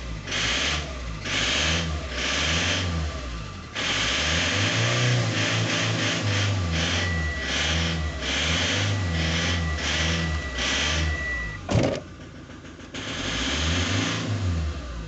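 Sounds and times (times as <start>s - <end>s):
engine revving in blips: 0.0s - 15.0s
high engine whine: 0.0s - 15.0s
sharp thump: 11.6s - 12.4s
metallic engine knock: 11.7s - 13.0s.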